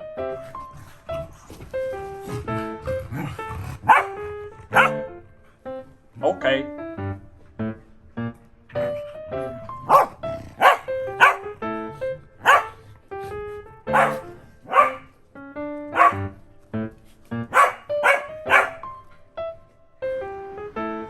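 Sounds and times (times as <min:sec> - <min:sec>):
background music with plucked notes: 0:00.0 - 0:21.0
dog barking: 0:03.1 - 0:05.1, 0:09.8 - 0:11.6, 0:12.4 - 0:12.8, 0:13.9 - 0:15.2, 0:15.9 - 0:16.4, 0:17.5 - 0:19.0.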